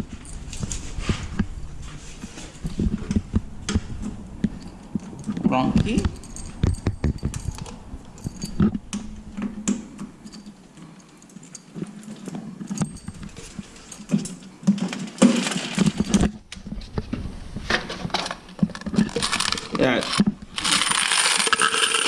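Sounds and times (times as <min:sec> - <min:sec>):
keys clicking in a lock: 0:04.5 - 0:14.5
keys jangling: 0:04.5 - 0:16.3.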